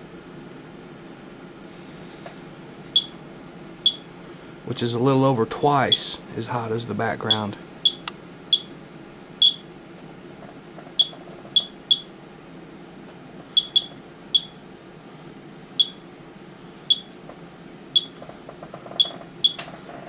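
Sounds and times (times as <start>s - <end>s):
geiger counter chirping: 2.9s - 3.2s, 3.8s - 4.1s, 7.3s - 8.7s, 9.4s - 9.7s, 10.9s - 12.1s, 13.6s - 14.6s, 15.8s - 16.0s, 16.9s - 17.2s, 18.0s - 18.2s.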